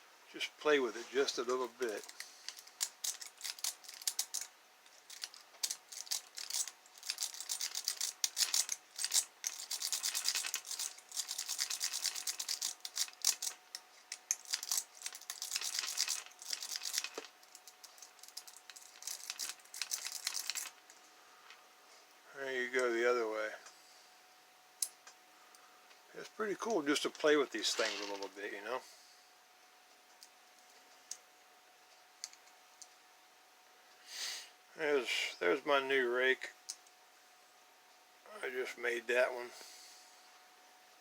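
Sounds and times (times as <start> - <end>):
lock rake scraping pins: 1.5 - 13.6, 27.2 - 28.4.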